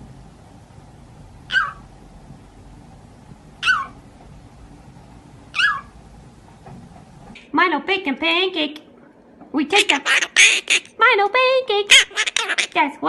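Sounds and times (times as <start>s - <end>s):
parrot calls: 1.5s - 1.9s, 3.6s - 4.0s, 5.5s - 6.0s, 9.8s - 11.0s, 11.9s - 12.8s.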